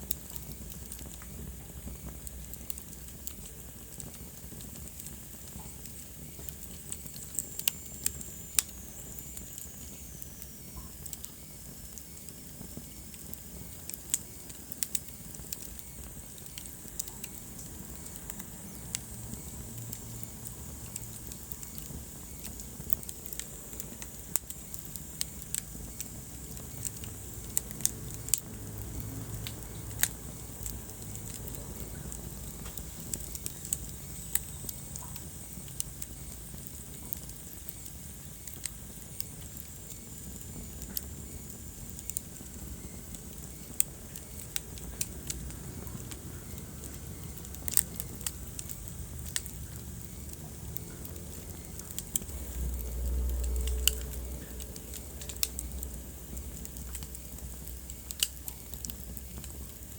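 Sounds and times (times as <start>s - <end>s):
fire crackling and popping: 0.0s - 59.9s
low rumble of flames: 0.0s - 59.9s.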